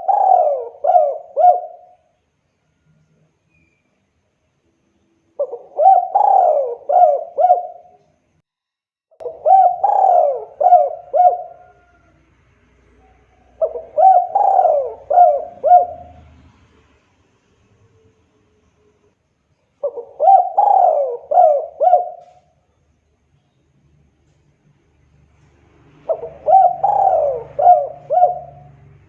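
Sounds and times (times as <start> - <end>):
dove cooing: 0.0 - 2.1, 5.4 - 8.1, 9.2 - 12.2, 12.9 - 16.4, 19.8 - 22.6, 26.0 - 29.0.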